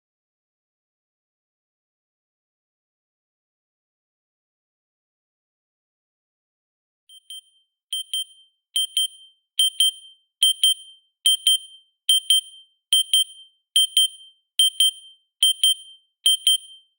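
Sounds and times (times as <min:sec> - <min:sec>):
timer double beep: 0:07.1 - 0:16.8.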